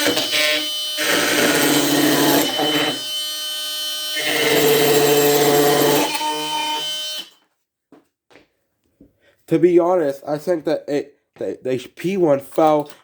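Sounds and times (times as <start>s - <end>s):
oscillating multi-tool cutting wood: 0.0s - 7.4s.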